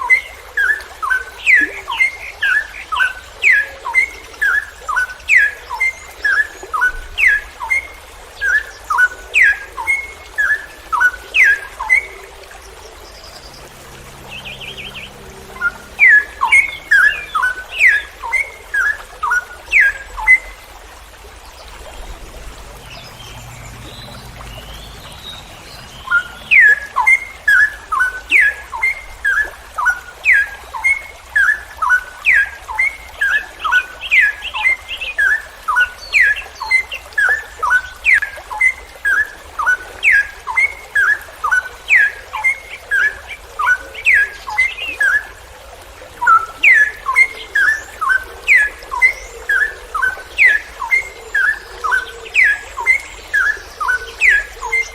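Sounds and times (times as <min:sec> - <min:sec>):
bird singing whistled notes: 0:14.2 - 0:20.5, 0:22.9 - 0:45.2.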